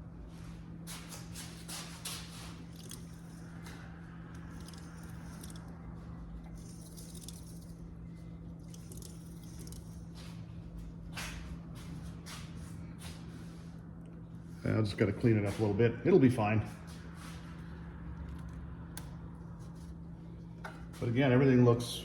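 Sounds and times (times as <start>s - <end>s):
steady low hum: 0.0s - 22.0s
metal parts rattling: 2.3s - 3.6s, 4.3s - 5.8s, 6.4s - 7.9s, 8.6s - 10.0s.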